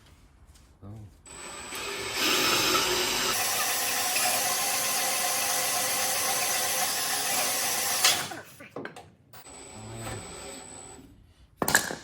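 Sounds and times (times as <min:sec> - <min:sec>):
power drill whining under load: 0:01.3 - 0:08.5.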